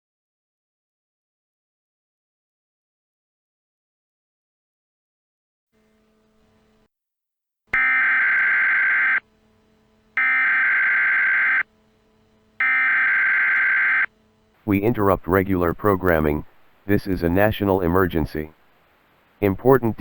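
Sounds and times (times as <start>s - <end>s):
digital data tone bursts: 7.8s - 9.2s, 10.2s - 11.7s, 12.6s - 14.1s.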